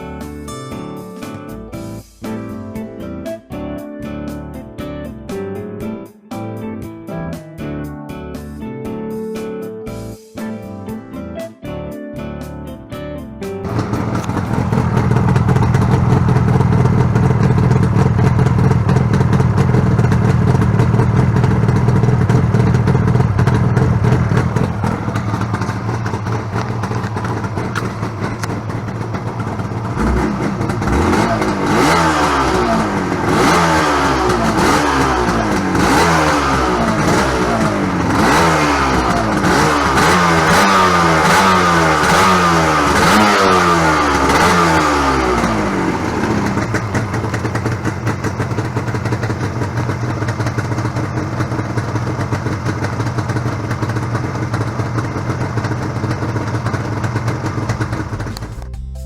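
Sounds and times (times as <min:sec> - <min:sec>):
two-stroke engine idling: 0:13.6 - 0:58.7
engine throttle blips: 0:13.7 - 0:58.7.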